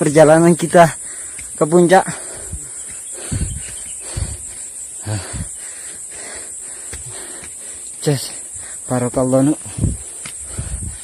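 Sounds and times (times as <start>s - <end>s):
high-pitched insect drone: 0.0s - 11.0s
soft footsteps thumping: 0.7s - 5.9s, 6.7s - 7.8s, 9.7s - 11.0s.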